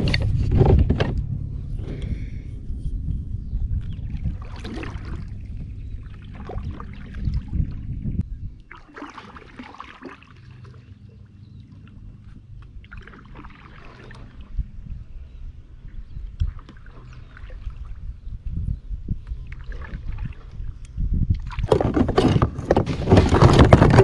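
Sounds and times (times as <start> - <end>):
low rumble: 0.0 - 8.8, 10.4 - 21.6
paddle splashing in water: 3.8 - 7.9, 8.7 - 14.6, 16.3 - 18.0, 19.4 - 20.7, 21.3 - 22.2.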